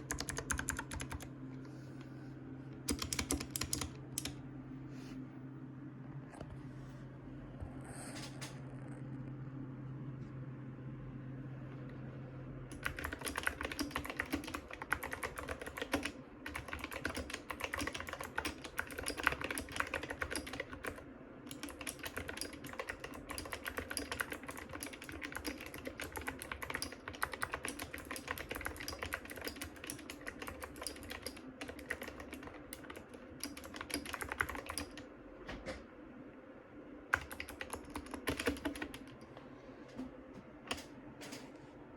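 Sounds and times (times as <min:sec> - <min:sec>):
fast clicky keyboard typing: 0:00.0 - 0:01.3, 0:02.9 - 0:04.4, 0:12.7 - 0:35.1, 0:37.1 - 0:39.1
steady low hum: 0:00.0 - 0:41.9.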